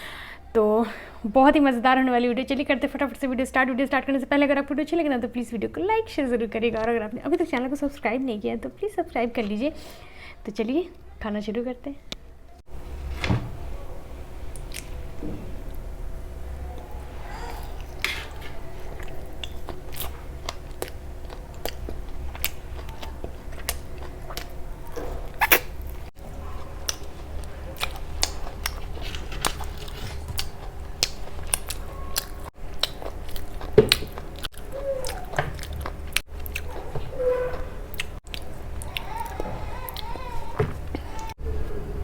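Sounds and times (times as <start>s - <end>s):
chewing and crunching: 16.6s - 41.4s
mouth clicks: 21.6s - 26.0s.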